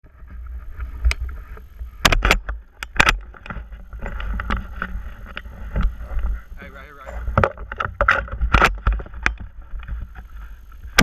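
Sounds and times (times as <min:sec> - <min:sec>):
sharp knocks and clicks: 0:02.0 - 0:06.3, 0:07.0 - 0:10.2.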